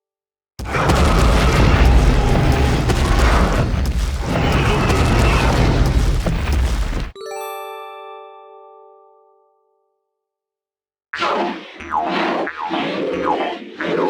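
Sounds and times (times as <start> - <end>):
deep rumbling sound effect: 0.6 - 7.2.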